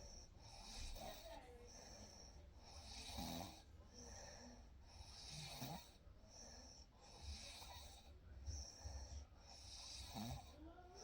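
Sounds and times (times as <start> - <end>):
person snoring softly: 9.6 - 10.6.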